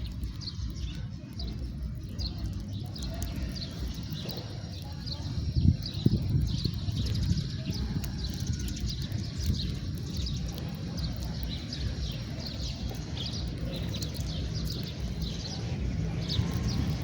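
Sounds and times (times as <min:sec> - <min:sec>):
low rumble: 0:00.0 - 0:17.0
sparrows chirping: 0:00.0 - 0:17.0.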